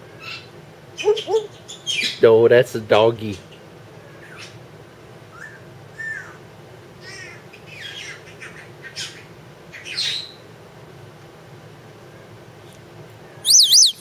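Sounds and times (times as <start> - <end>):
parrot squawking: 13.4 - 14.0
parrot whistling: 13.4 - 14.0.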